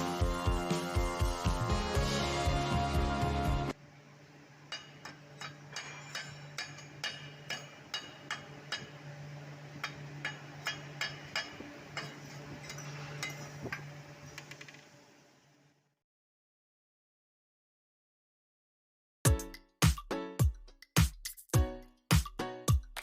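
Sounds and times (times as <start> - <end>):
hammer tapping on steel: 4.7 - 9.0, 9.8 - 12.2.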